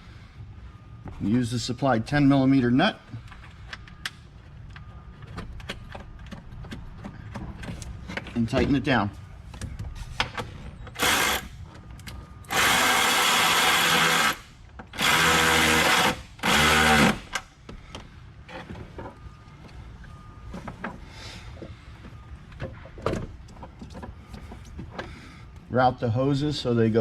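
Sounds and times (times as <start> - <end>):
cordless drill motor bursts: 11.0 - 11.5, 12.5 - 17.4.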